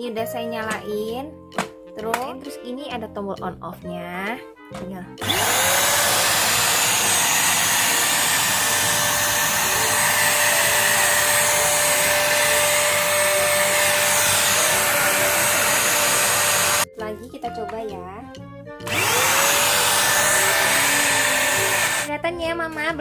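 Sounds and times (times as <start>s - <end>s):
vacuum cleaner running: 5.2s - 16.9s, 18.9s - 22.1s.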